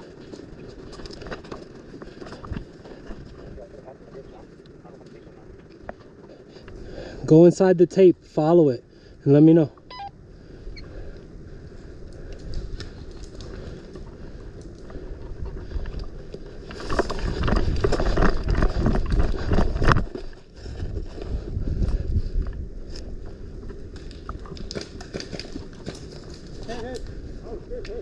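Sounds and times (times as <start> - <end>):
rustling gear: 0.0 - 6.8, 11.7 - 22.6
wind buffeting microphone: 10.2 - 28.0.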